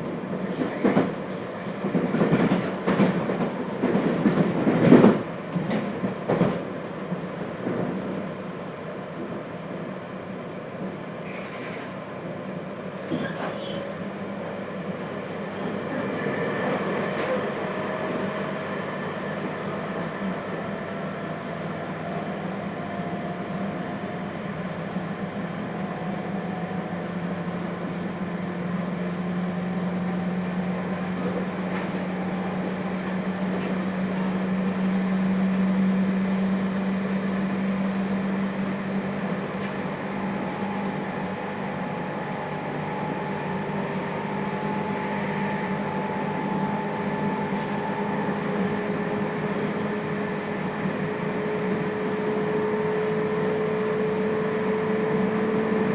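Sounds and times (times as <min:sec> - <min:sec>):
train running rumble: 0:00.0 - 0:55.9.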